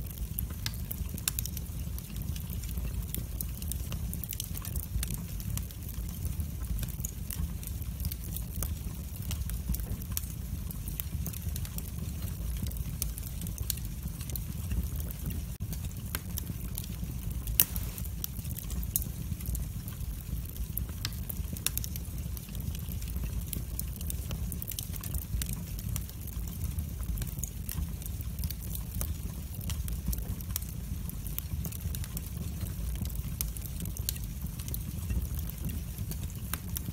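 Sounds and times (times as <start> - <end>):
wood fire crackling: 0.0 - 36.9
sharp pops: 17.6 - 18.0.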